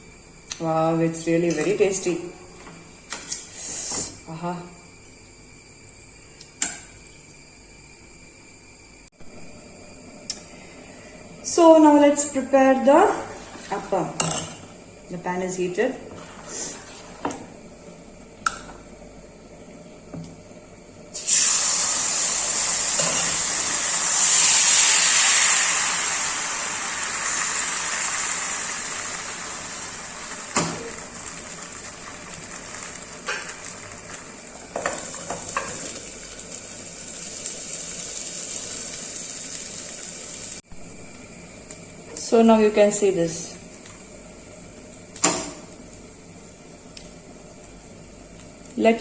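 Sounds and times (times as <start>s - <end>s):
batter sizzling on a pan: 21.2s - 40.7s.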